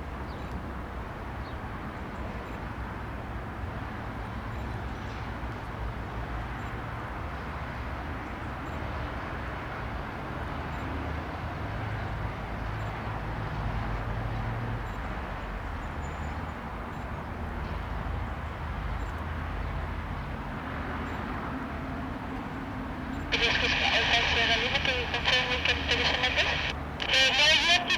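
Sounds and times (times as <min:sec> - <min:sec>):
turboprop engines running: 0:23.4 - 0:27.9.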